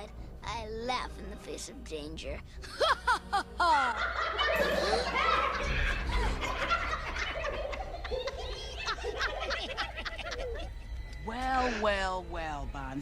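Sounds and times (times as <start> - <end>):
low rumble: 5.2 - 13.0.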